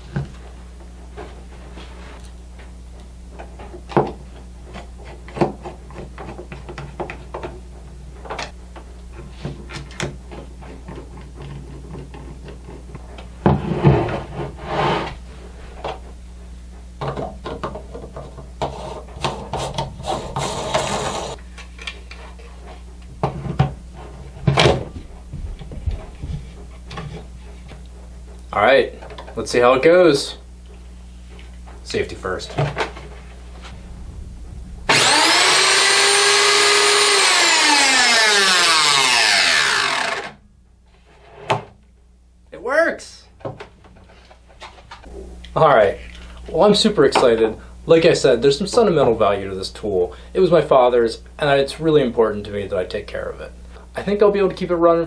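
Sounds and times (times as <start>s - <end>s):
rubbing and scraping: 13.5s - 15.8s, 18.6s - 21.4s.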